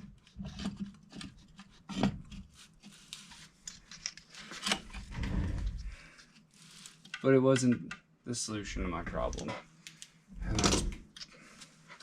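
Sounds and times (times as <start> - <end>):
heavy rumbling handling noise: 4.8 - 6.1.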